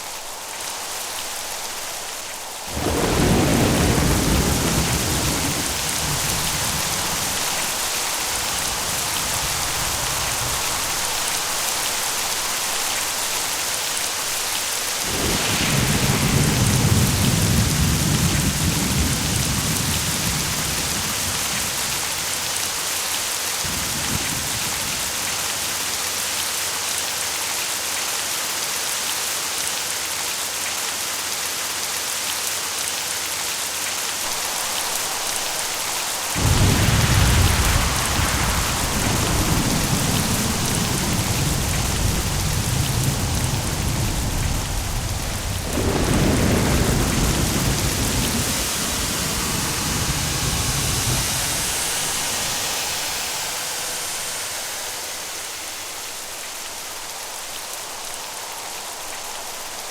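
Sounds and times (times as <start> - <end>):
heavy rain hissing: 0.0 - 59.9
thunder clap and rolling rumble: 1.0 - 22.7, 23.6 - 25.7, 34.3 - 55.4.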